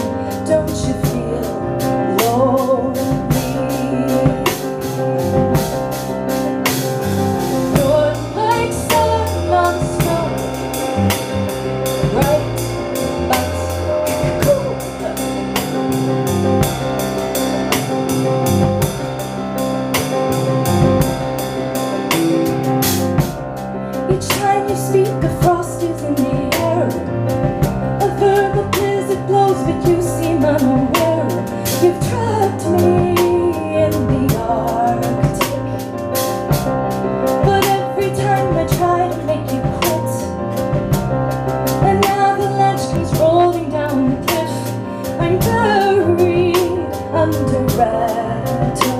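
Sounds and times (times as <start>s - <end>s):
woman singing: 0.0s - 5.1s, 7.7s - 10.9s, 12.0s - 15.4s, 24.1s - 35.8s, 37.4s - 40.4s, 41.7s - 48.9s
keyboard and drums: 0.0s - 48.9s.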